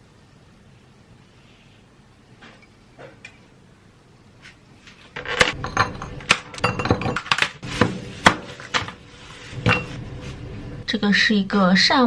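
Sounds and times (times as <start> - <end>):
dishes and utensils clinking: 5.2 - 7.6, 9.5 - 10.0.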